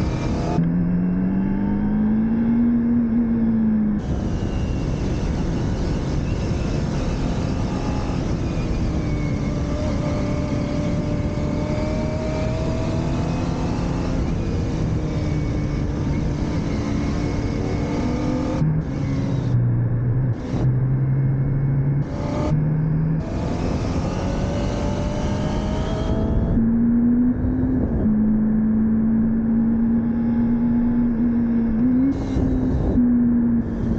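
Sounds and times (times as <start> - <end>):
constant rushing noise: 0.0 - 0.9, 4.0 - 26.7, 30.5 - 33.9.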